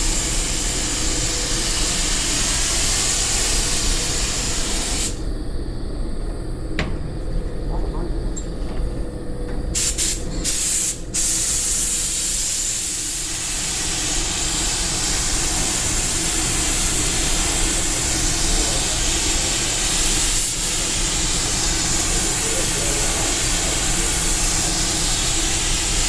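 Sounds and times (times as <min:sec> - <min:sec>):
paint spray gun hissing: 0:01.6 - 0:05.2, 0:09.8 - 0:26.0.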